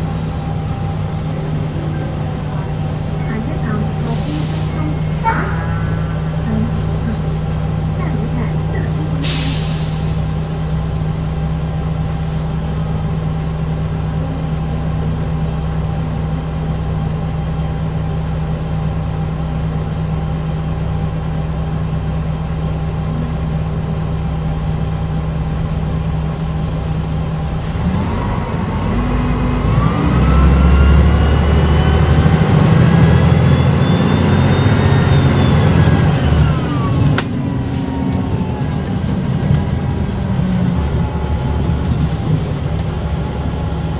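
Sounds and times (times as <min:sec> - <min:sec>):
bus diesel engine: 0:00.0 - 0:43.9
gearbox and turbo whine: 0:23.1 - 0:43.9.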